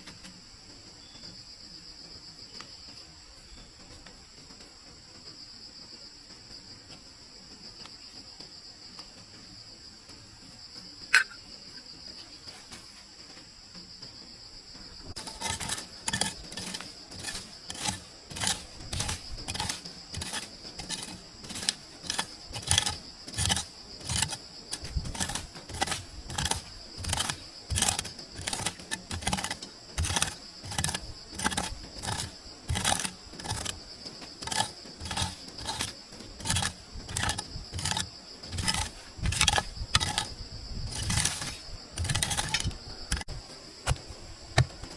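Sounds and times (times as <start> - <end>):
crickets trilling: 0.0 - 44.9
short knocks or crunches: 15.2 - 44.9.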